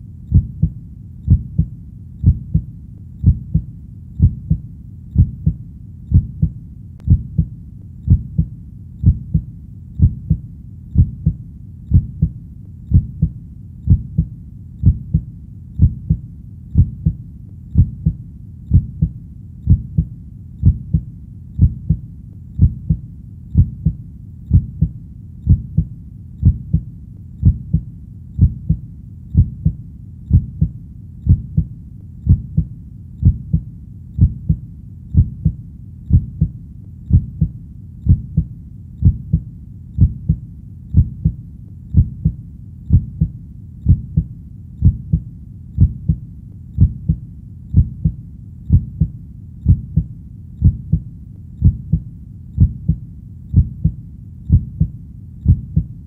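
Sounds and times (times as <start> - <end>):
heartbeat double thump: 0.3 - 4.6, 5.2 - 7.5, 8.1 - 10.4, 11.0 - 16.2, 16.8 - 17.2, 17.8 - 22.0, 22.6 - 23.0, 23.6 - 24.9, 25.5 - 27.8, 28.4 - 28.8, 29.4 - 30.7, 31.3 - 31.7, 32.3 - 33.6, 34.2 - 34.6, 35.2 - 37.5, 38.1 - 39.4, 40.0 - 40.4, 41.0 - 41.4, 42.0 - 43.3, 43.9 - 45.2, 45.8 - 46.2, 46.8 - 47.2, 47.8 - 51.0, 51.6 - 52.0, 52.6 - 56.0.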